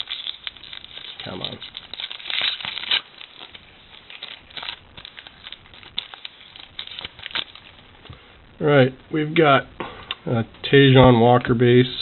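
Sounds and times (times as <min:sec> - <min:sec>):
cards rustling and clicking: 0:00.0 - 0:08.2
wrapper crinkling: 0:00.0 - 0:08.2.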